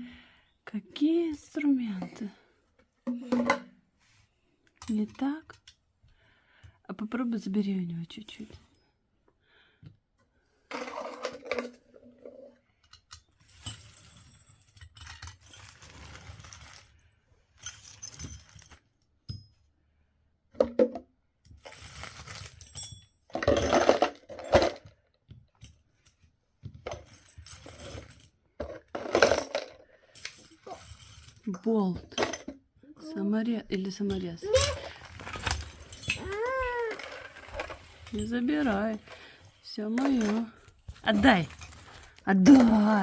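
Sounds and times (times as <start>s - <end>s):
metal hardware clinking and rattling: 33.8s - 43.0s.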